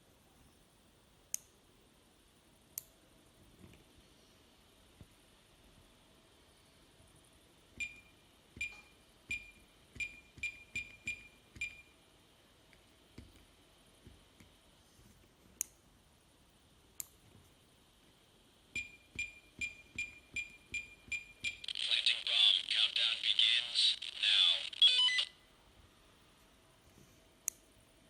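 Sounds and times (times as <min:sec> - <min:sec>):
short high electronic beeps: 0:24.0 - 0:25.3.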